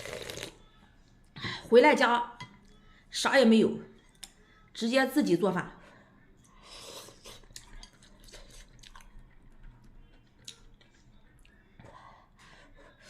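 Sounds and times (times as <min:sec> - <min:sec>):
person chewing: 0:06.8 - 0:11.6.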